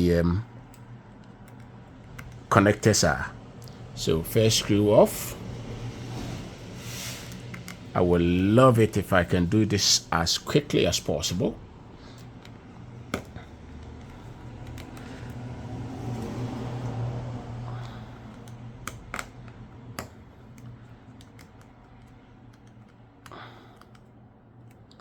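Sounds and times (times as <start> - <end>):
low steady hum: 0.0 - 25.0
screwdriver clicks and taps on phone: 12.2 - 15.5, 17.8 - 24.1.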